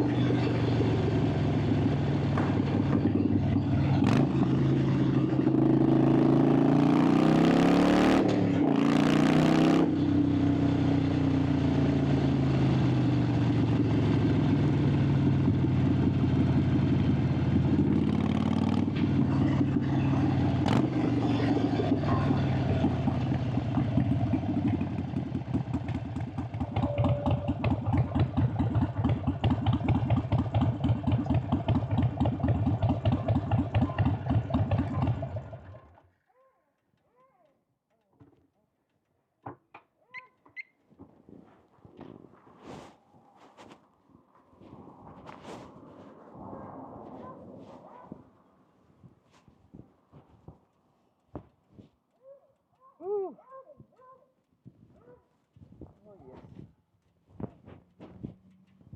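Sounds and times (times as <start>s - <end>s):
motorcycle engine revving and idling: 0.0s - 36.2s, 55.8s - 58.9s.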